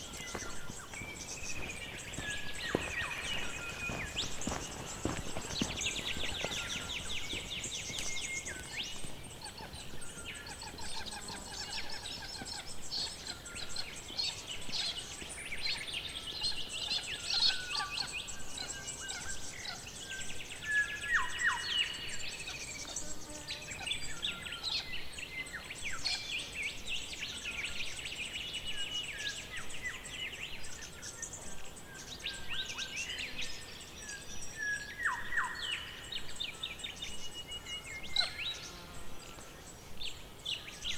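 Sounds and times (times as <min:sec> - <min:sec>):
birds chirping and trilling: 0:00.0 - 0:40.9.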